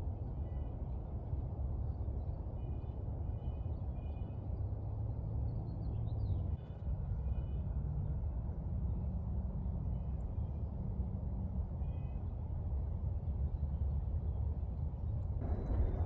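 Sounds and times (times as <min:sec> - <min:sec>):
low rumble: 0:15.4 - 0:16.0.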